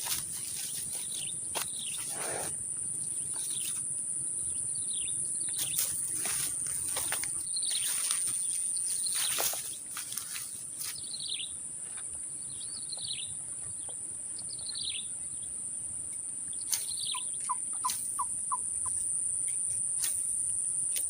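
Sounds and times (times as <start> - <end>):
falling bird chirps: 16.6 - 19.0.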